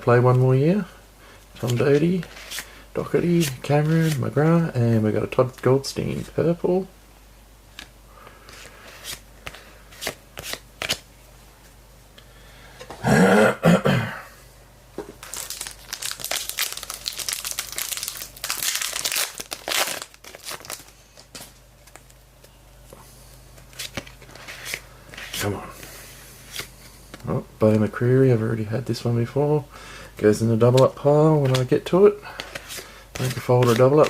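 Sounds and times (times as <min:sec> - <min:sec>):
wrapper crinkling and tearing: 0:15.2 - 0:22.1.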